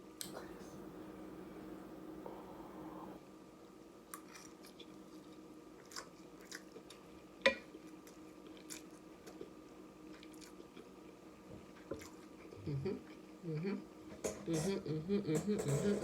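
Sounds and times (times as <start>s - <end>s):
person chewing noodles: 4.1s - 13.3s.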